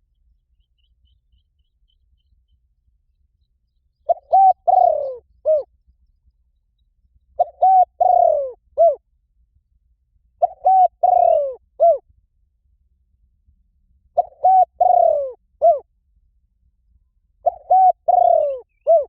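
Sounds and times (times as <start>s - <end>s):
dove cooing: 4.0s - 5.7s, 7.4s - 9.0s, 10.4s - 12.0s, 14.2s - 15.8s, 17.4s - 19.0s.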